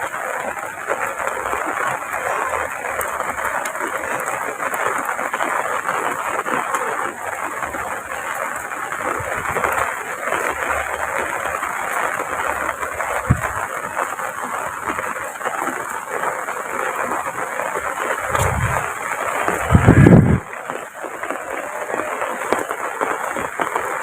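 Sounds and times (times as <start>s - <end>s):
heavy rain falling: 0.0s - 24.0s
short low thump: 18.3s - 18.9s.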